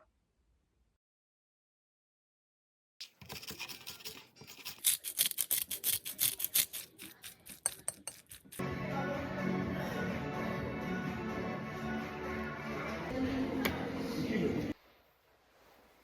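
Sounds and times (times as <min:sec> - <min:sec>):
music: 0:08.6 - 0:14.8.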